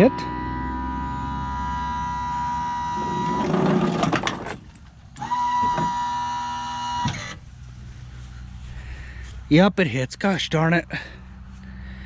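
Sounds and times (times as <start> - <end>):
electric lift motor whining: 0.0 - 7.5
metal clatter and knocks: 3.4 - 5.0.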